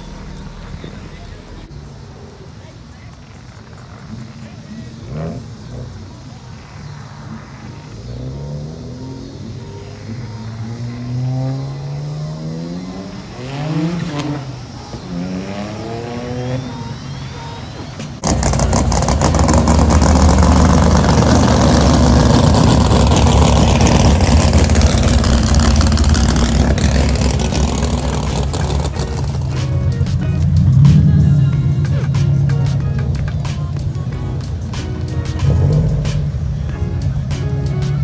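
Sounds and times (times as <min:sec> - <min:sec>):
car engine revving: 0:00.0 - 0:01.7, 0:03.7 - 0:38.0.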